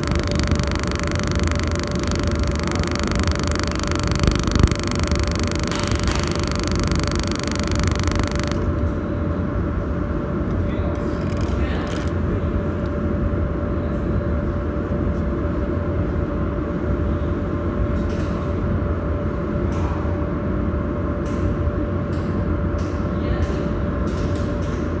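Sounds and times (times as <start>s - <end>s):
sharp clicks: 0.0s - 8.6s
welding machine humming: 0.0s - 8.6s.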